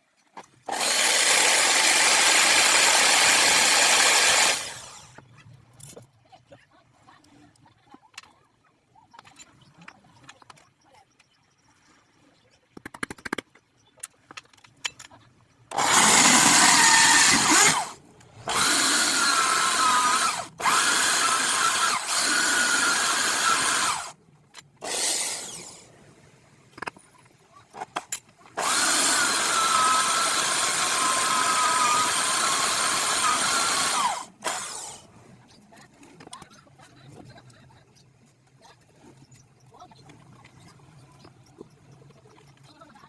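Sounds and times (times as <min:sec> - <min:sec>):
electric power tool running: 0:00.7 - 0:05.0, 0:15.7 - 0:24.1, 0:24.8 - 0:25.8, 0:28.6 - 0:35.0.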